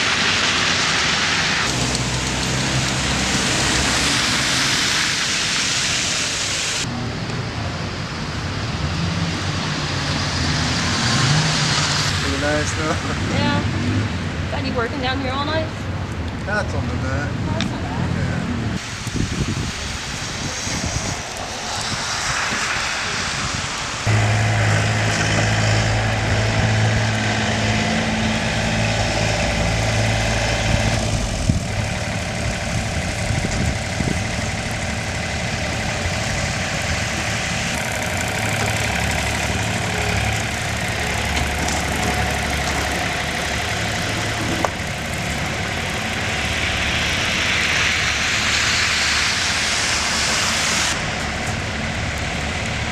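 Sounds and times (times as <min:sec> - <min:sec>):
vehicle engine running: 0:00.0 - 0:07.1, 0:19.5 - 0:52.9.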